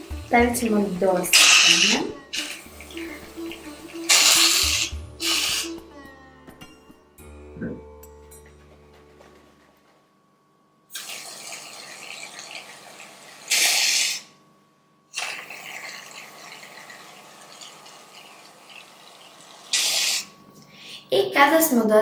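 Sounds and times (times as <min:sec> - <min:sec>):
aerosol can hissing: 0:00.0 - 0:06.0, 0:13.4 - 0:14.3, 0:19.6 - 0:20.4.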